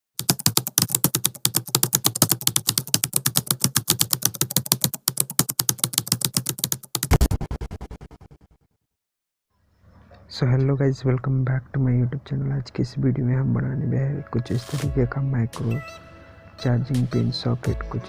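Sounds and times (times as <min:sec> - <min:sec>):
rapid keyboard typing clicks: 0:00.2 - 0:07.2.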